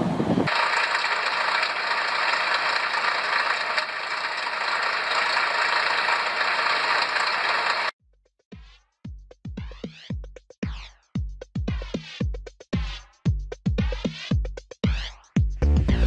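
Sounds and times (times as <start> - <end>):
train rumble: 0.0 - 7.9
machine hissing noise: 0.5 - 7.9.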